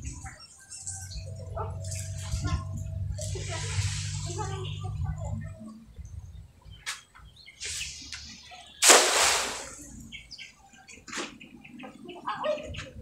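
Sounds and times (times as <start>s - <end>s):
water splashing: 8.8s - 10.0s.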